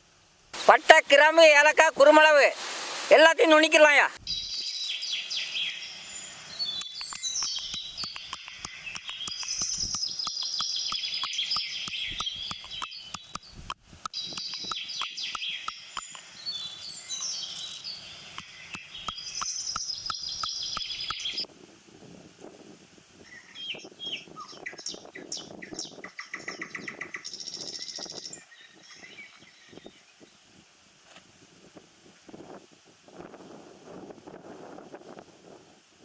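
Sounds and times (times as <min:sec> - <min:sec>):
birds chirping and singing: 0:04.2 - 0:13.6, 0:14.2 - 0:21.5, 0:23.3 - 0:30.2.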